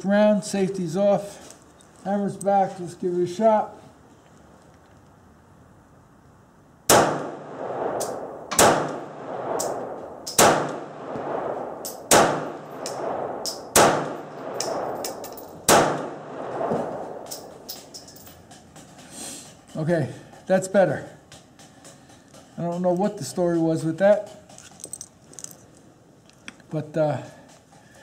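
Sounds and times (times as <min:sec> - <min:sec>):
pistol shots ringing: 0:06.9 - 0:11.1, 0:11.8 - 0:16.5
metallic clinks: 0:14.3 - 0:15.7, 0:17.2 - 0:20.5, 0:21.3 - 0:26.5.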